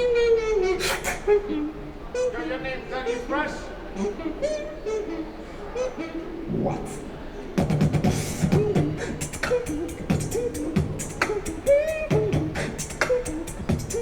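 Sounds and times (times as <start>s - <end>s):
gliding vocal melodic notes: 0.0s - 14.0s
beatboxing drum hits: 7.6s - 14.0s
vocal bass line: 7.6s - 14.0s.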